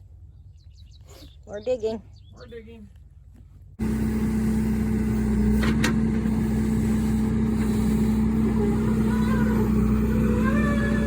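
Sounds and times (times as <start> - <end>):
backhoe engine running: 3.8 - 11.0.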